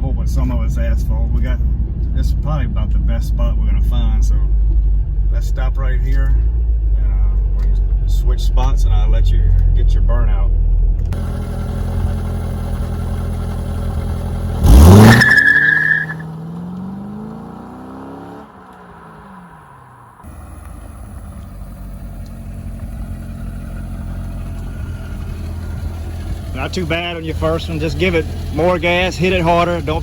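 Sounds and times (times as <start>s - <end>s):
road noise: 0.0s - 30.0s
car engine revving: 11.1s - 30.0s
tire squeal: 13.1s - 23.6s.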